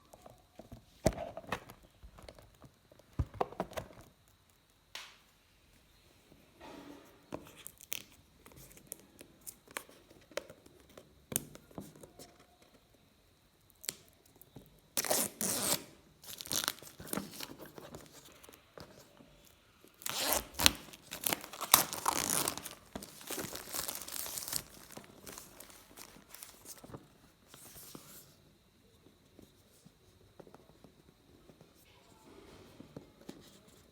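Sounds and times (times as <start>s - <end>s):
plastic wrap tearing and crinkling: 15.0s - 18.4s, 19.9s - 26.9s.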